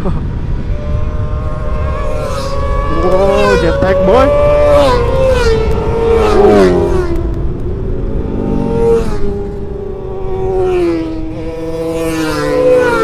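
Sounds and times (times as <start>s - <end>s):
steady low rumble: 0.0s - 10.4s
motorcycles revving past: 0.0s - 13.0s.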